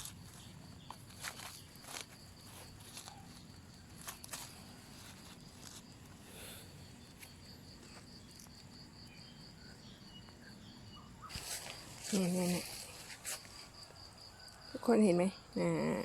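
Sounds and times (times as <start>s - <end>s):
rustling clicks in leaf litter: 0.0s - 6.2s, 11.3s - 13.6s
insect trilling: 0.0s - 16.0s.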